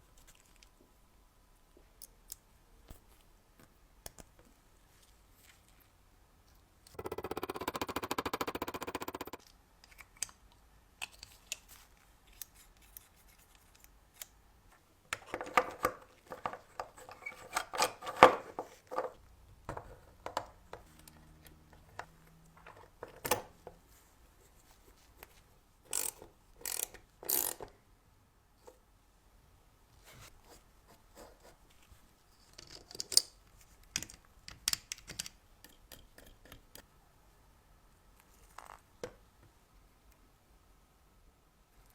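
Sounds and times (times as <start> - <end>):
sharp clicks and taps: 6.9 - 9.5
tools scraping metal parts: 7.0 - 10.3.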